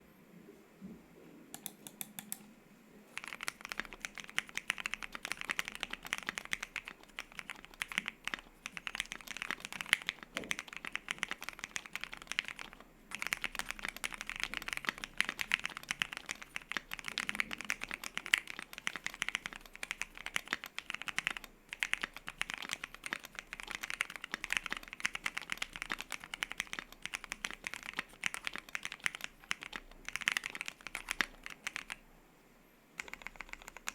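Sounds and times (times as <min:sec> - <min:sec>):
typing on mechanical keyboard: 0:01.6 - 0:02.4, 0:03.2 - 0:32.0, 0:33.0 - 0:33.9.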